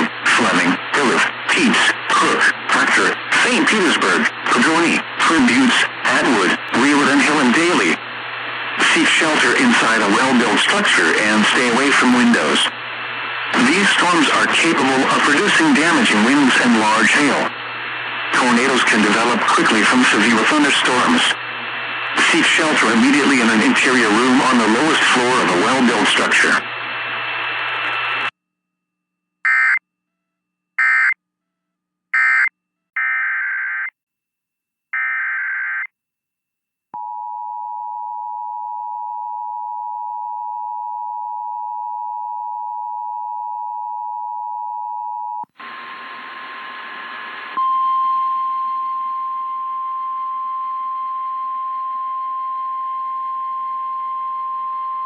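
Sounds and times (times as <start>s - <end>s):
loud steady alarm tone: 29.5s - 29.8s, 30.8s - 31.2s, 32.2s - 33.9s, 35.0s - 35.9s
screeching digital data bursts: 29.5s - 29.8s, 30.8s - 31.2s, 32.2s - 33.9s.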